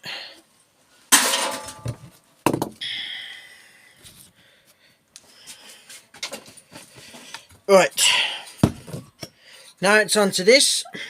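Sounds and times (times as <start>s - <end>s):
metal parts clattering onto scrap pile: 1.1s - 2.0s.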